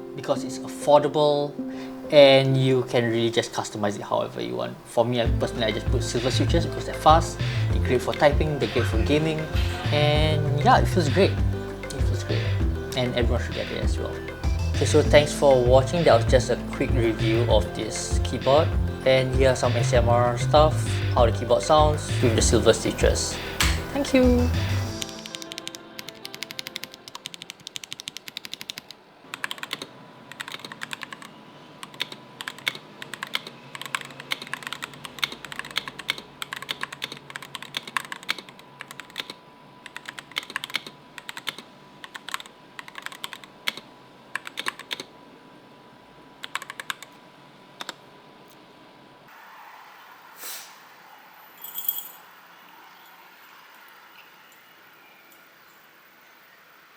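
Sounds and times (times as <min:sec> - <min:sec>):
mechanical keyboard typing: 0:25.0 - 0:45.1, 0:46.4 - 0:47.2.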